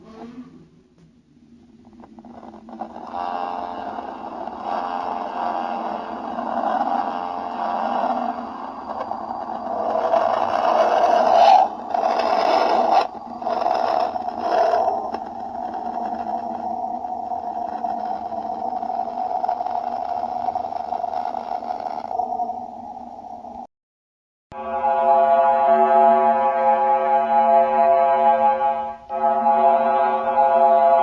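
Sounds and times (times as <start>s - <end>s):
eerie droning hum: 0.0s - 23.7s.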